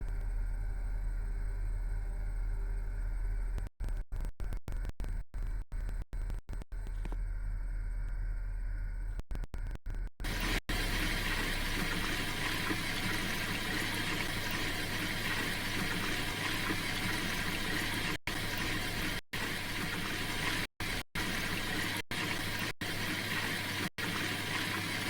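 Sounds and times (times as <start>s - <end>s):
washing machine drum spinning: 10.2s - 25.0s
water swishing: 10.3s - 20.6s.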